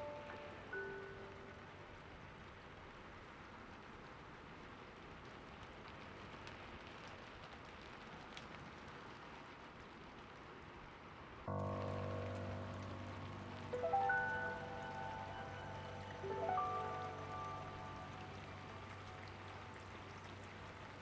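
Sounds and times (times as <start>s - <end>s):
gentle music chords: 0.0s - 2.9s, 11.5s - 21.0s
steady soft rainfall: 0.0s - 21.0s.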